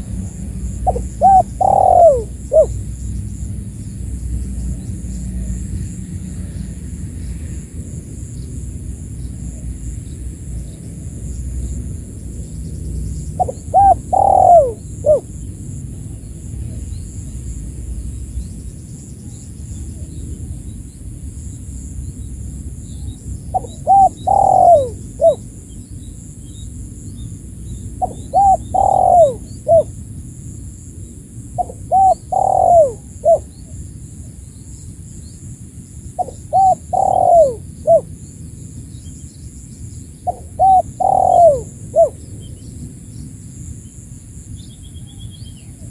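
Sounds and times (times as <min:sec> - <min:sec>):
dove cooing: 0:00.0 - 0:02.9, 0:13.4 - 0:15.3, 0:23.5 - 0:25.5, 0:28.0 - 0:29.9, 0:31.6 - 0:33.6, 0:36.2 - 0:38.2, 0:40.2 - 0:42.2.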